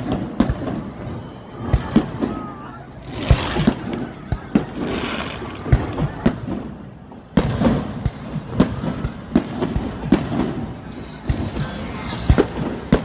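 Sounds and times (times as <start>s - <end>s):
fireworks bangs and booms: 0.0s - 13.0s.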